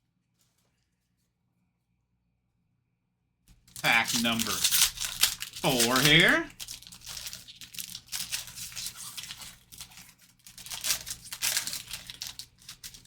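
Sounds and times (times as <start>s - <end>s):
foil wrapper crinkling and tearing: 3.5s - 13.0s.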